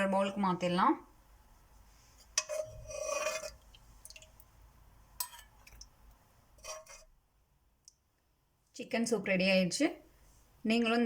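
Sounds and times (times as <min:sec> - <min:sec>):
metal utensil clinking on pot: 0:05.2 - 0:05.7.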